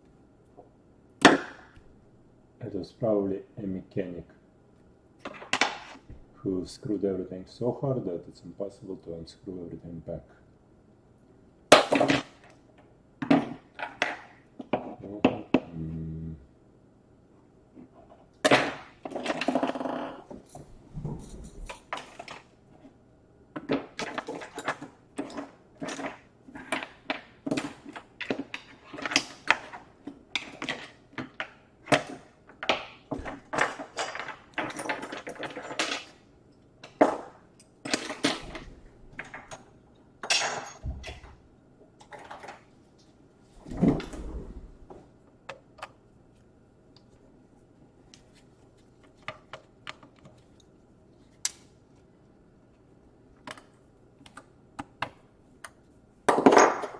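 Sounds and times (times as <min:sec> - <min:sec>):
small parts rattling: 0:33.2 - 0:36.2.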